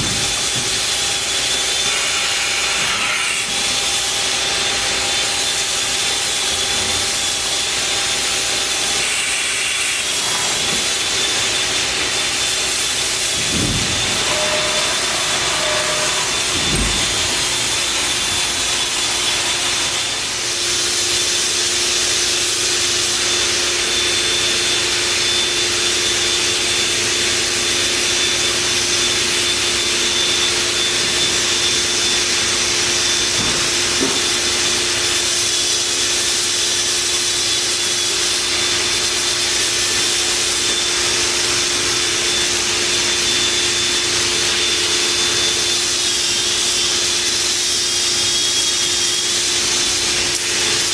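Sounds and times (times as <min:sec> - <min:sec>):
steady whining tone: 0:10.3 - 0:20.4.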